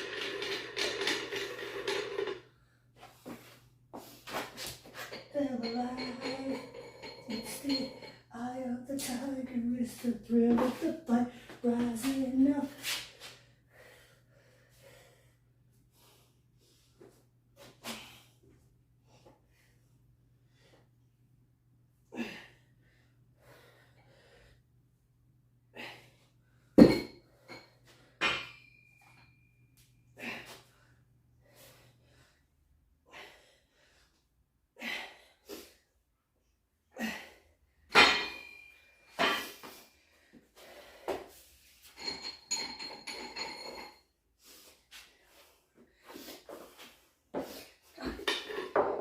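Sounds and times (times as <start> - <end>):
dumbbell metallic clinks: 5.0 - 8.3, 26.8 - 29.9, 37.9 - 39.7, 41.8 - 44.1
man breathing hard: 13.3 - 16.9, 39.2 - 41.5.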